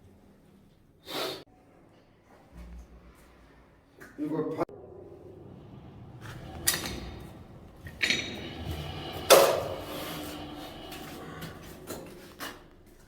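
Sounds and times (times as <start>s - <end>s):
low steady rumble: 4.7s - 12.2s.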